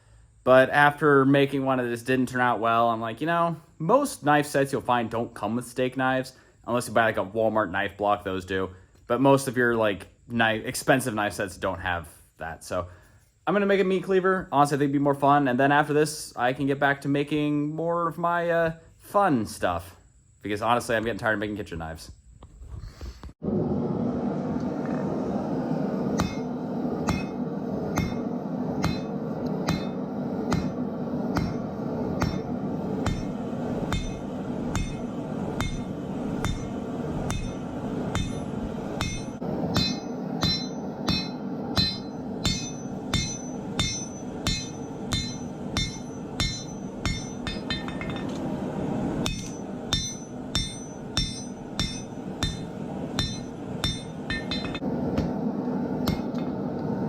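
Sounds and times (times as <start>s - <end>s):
steady rushing noise: 23.4s - 57.0s
hammer ringing on steel: 29.7s - 30.8s, 32.2s - 33.3s, 33.9s - 48.3s, 49.2s - 54.8s.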